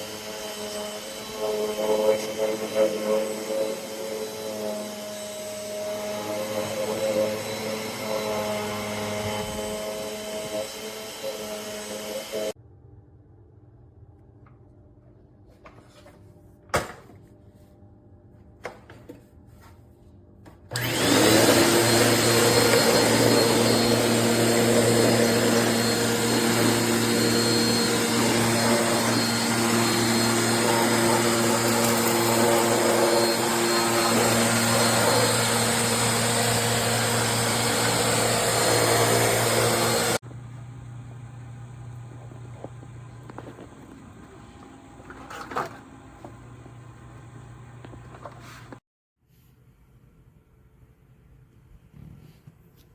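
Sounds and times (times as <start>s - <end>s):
vacuum cleaner running with whine: 0.0s - 12.6s, 20.7s - 48.4s.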